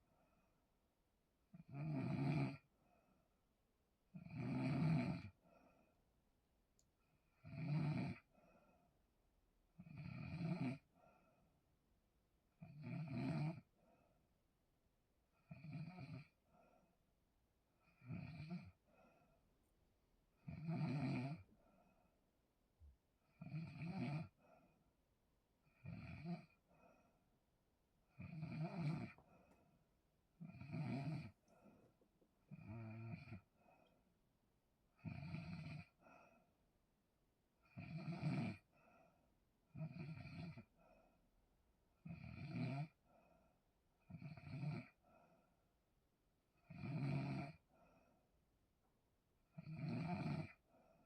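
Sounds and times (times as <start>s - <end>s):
soft breath: 18.8s - 19.6s, 26.6s - 27.4s, 31.4s - 32.3s, 33.4s - 34.2s, 36.0s - 36.6s, 38.7s - 39.3s
person snoring heavily: 20.5s - 21.5s, 25.8s - 27.0s, 28.2s - 29.2s, 30.4s - 31.4s, 35.0s - 36.0s, 37.7s - 38.6s.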